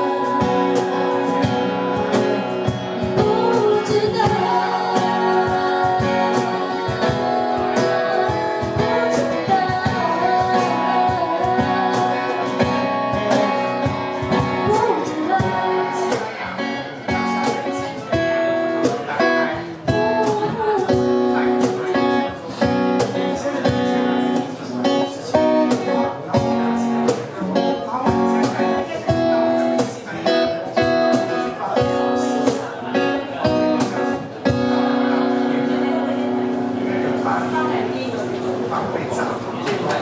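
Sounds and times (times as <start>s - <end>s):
band playing a song: 0.0s - 40.0s.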